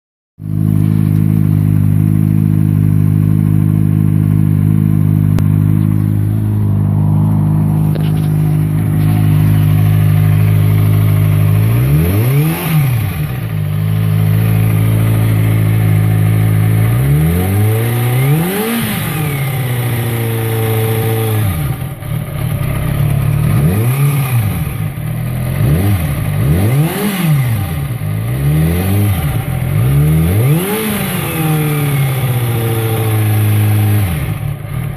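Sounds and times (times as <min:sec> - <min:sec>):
engine rattling noise: 0:00.4 - 0:28.4
motorcycle engine idling and revving: 0:00.4 - 0:34.9.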